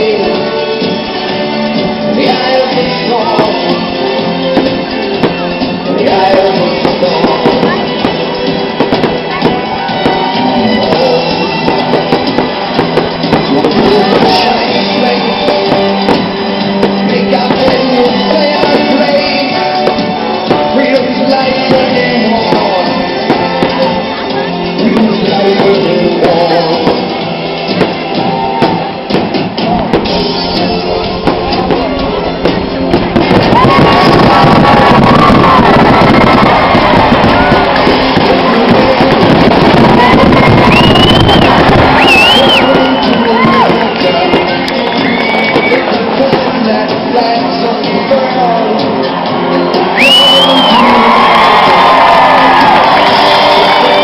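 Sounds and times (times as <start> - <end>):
person singing: 0.0 - 27.4, 37.4 - 40.9, 42.0 - 51.4
band playing loudly: 0.0 - 54.0.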